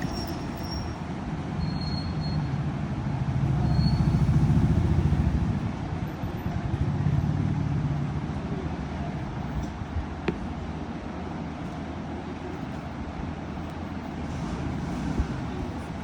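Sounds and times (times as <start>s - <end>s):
vehicle engine rumble: 0.0s - 16.0s.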